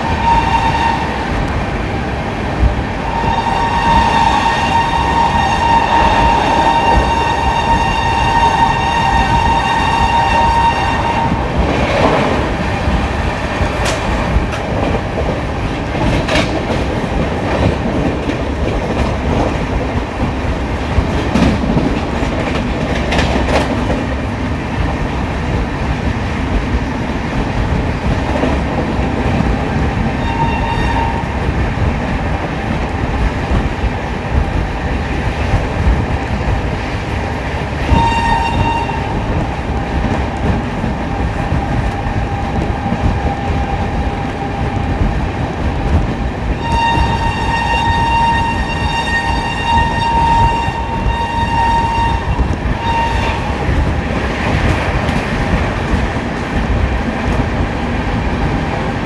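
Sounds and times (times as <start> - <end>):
train wheels clattering on rails: 0.0 - 59.0
locomotive horn blast: 3.2 - 11.4, 30.2 - 31.4, 37.9 - 39.2, 46.6 - 53.6.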